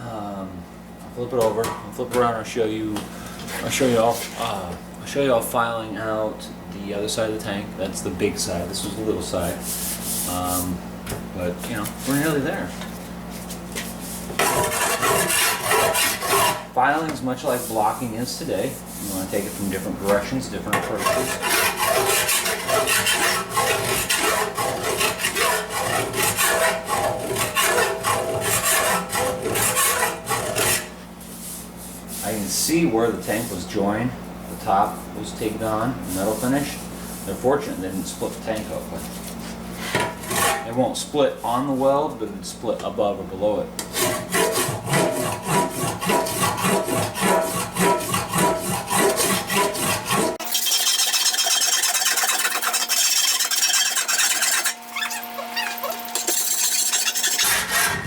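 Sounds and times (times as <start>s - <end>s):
hand file rasping on metal: 14.4s - 16.7s, 18.6s - 30.9s, 39.9s - 40.7s, 43.9s - 58.0s.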